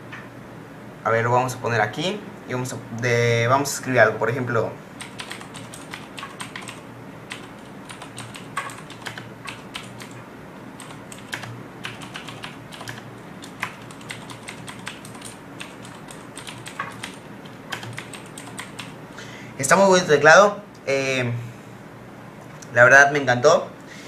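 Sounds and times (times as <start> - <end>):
clicky mechanical keyboard typing: 5.0 - 10.2, 10.8 - 19.0.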